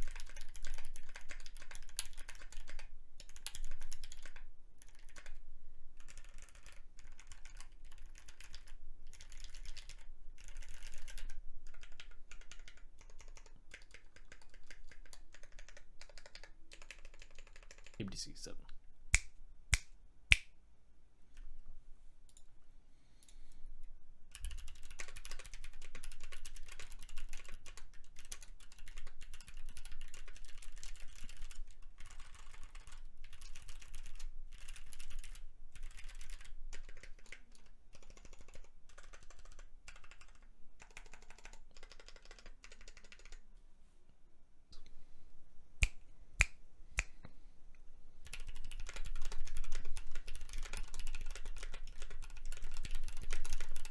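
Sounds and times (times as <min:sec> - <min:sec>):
mechanical keyboard typing: 0:00.0 - 0:05.4, 0:06.0 - 0:18.0, 0:24.3 - 0:43.4, 0:48.2 - 0:53.9.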